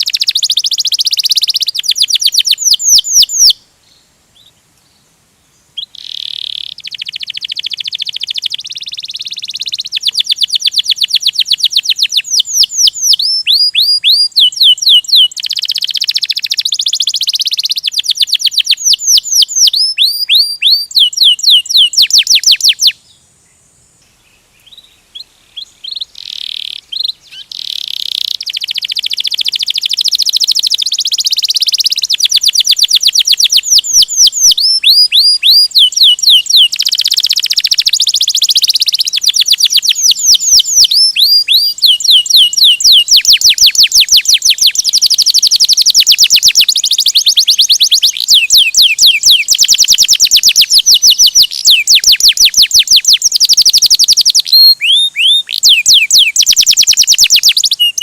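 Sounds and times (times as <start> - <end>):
canary singing: 0.0 - 3.6, 5.8 - 23.0, 24.6 - 58.0.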